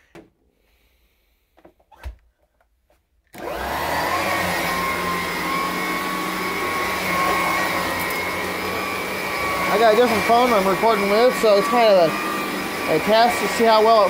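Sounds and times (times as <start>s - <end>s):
vacuum cleaner motor running: 3.4s - 14.0s.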